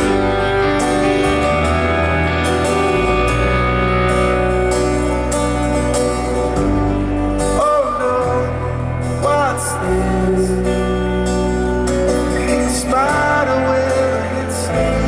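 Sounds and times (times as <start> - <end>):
rock band playing instrumental: 0.0 - 15.0
person singing wordless phrases: 7.5 - 11.2, 12.2 - 15.0.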